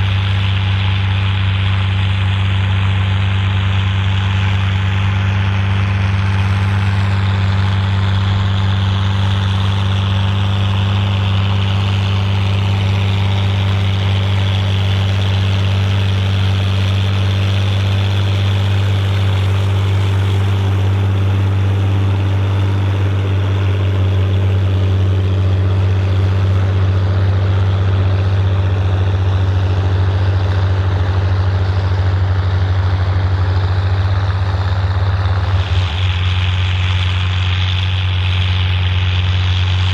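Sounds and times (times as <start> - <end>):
tractor diesel engine under load: 0.0 - 39.9.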